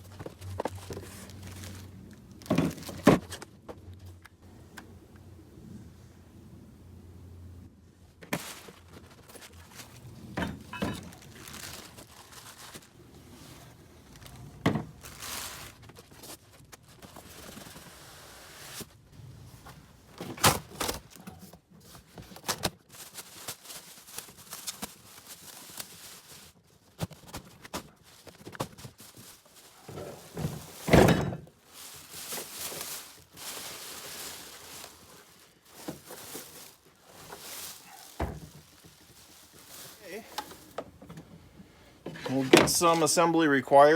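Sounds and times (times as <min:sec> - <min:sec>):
cardboard rustling and scraping: 0:00.0 - 0:03.9, 0:08.2 - 0:41.1, 0:42.0 - 0:43.3
thunks and knocks: 0:38.1 - 0:39.0.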